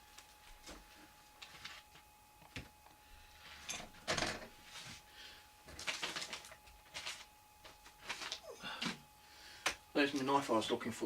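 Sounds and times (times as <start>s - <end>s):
objects being rummaged: 5.7s - 9.0s.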